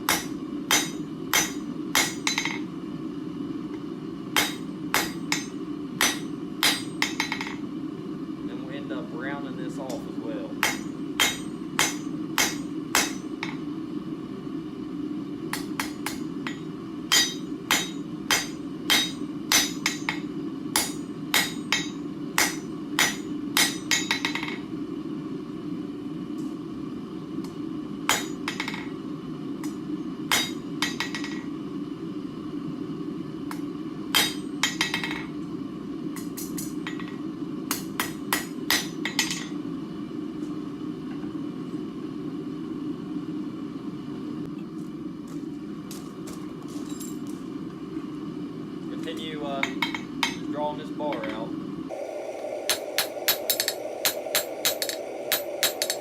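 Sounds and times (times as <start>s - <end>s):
hammer striking steel on anvil: 0.0s - 2.7s, 4.4s - 7.6s, 10.6s - 13.6s, 15.5s - 24.6s, 28.1s - 29.0s, 29.6s - 31.5s, 33.5s - 35.4s, 36.2s - 39.6s, 49.6s - 50.5s, 52.7s - 56.0s
steady low hum: 0.0s - 56.0s.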